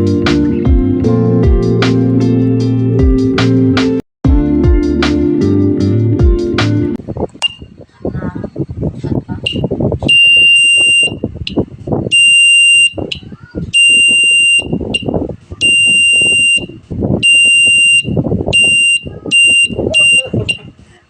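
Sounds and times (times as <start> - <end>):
electronic alarm buzzer bursts: 9.5 - 11.2, 13.8 - 20.6.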